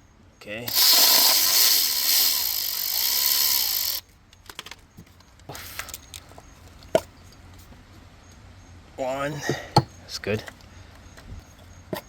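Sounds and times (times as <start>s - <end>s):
cordless power tool spinning: 0.7s - 4.0s.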